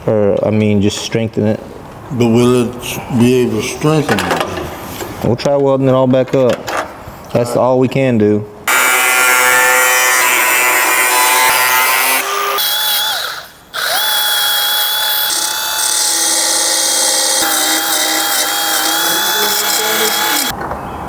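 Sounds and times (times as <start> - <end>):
belt sander on steel: 8.7 - 20.5.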